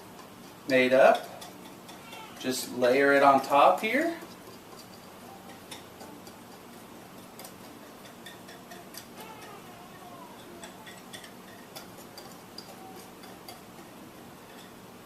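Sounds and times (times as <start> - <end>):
metal spoon scraping bowl: 0.0 - 14.8
faint steady hum: 0.0 - 15.0.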